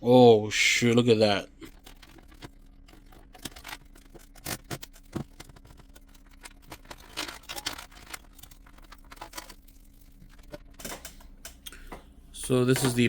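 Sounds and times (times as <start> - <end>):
faint steady hum: 0.0 - 13.0
clicks and scrapes of computer parts: 1.7 - 11.7.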